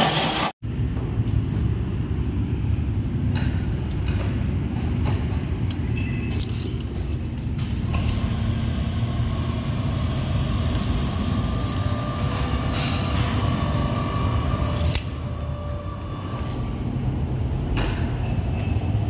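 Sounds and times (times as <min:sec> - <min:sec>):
core drilling machine running: 0:07.9 - 0:15.6.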